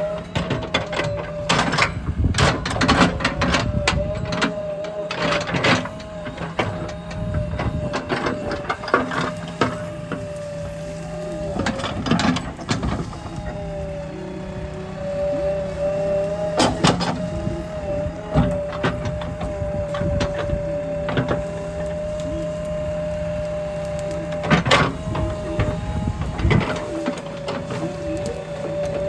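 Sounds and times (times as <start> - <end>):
backhoe engine and hydraulics whine: 0.0 - 29.0.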